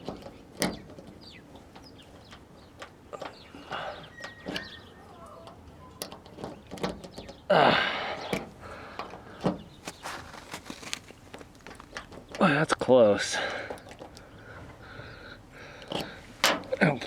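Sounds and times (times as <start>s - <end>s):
key clicking in a lock: 5.4s - 7.4s.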